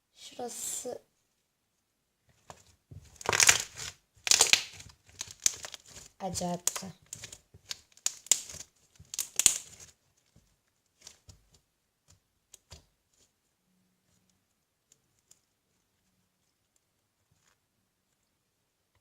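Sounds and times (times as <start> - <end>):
slime crackling and popping: 3.0 - 10.0.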